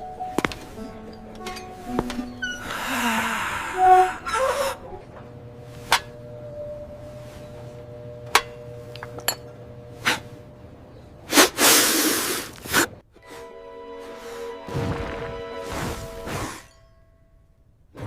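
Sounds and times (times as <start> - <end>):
loud hissing burst: 11.3 - 13.0.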